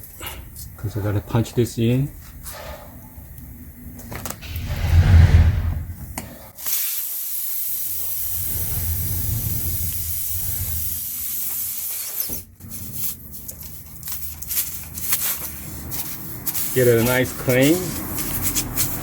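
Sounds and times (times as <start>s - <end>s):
low thump: 4.4s - 6.1s
air hissing out of tyre: 6.6s - 13.2s, 14.5s - 19.0s.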